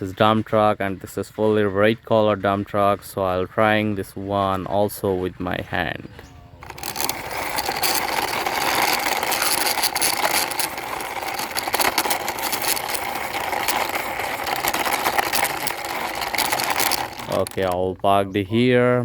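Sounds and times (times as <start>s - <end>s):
toy truck wheels whirring and clicking: 6.6s - 17.9s.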